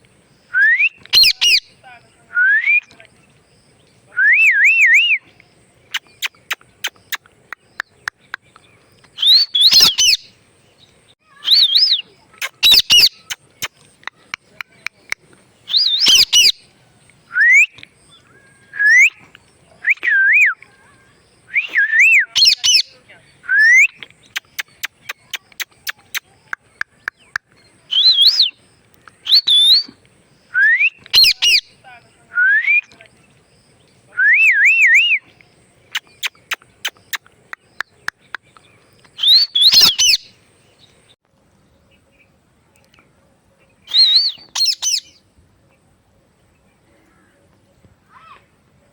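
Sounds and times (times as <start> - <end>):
parrot screeching: 9.2 - 10.2, 11.4 - 13.2, 39.2 - 40.2
parrot whistling: 9.2 - 10.2, 15.7 - 16.6, 39.2 - 40.3, 43.9 - 45.0.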